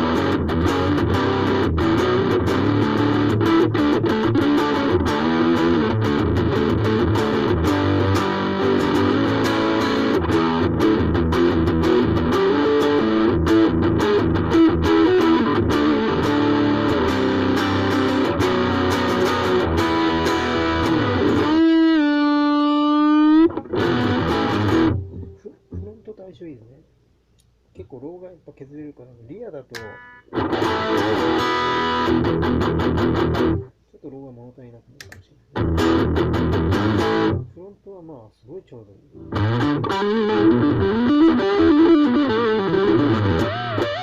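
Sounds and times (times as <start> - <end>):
distorted electric guitar: 0.0 - 26.0, 29.7 - 33.7, 35.6 - 37.5, 39.2 - 44.0.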